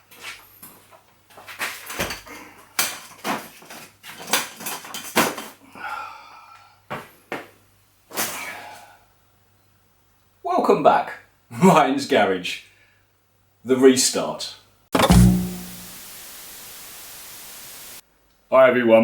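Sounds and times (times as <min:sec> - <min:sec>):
sharp clanks and knocks: 0:15.0 - 0:16.0
brief higher-pitched sound: 0:15.0 - 0:16.1.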